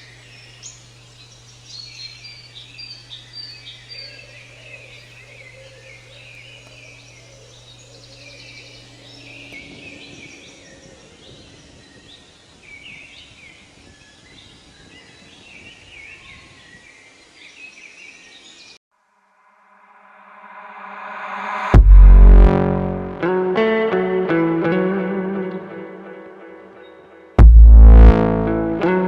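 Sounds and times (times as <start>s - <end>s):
songbirds singing and chirping: 0.0s - 18.8s
steady low hum: 20.2s - 23.2s.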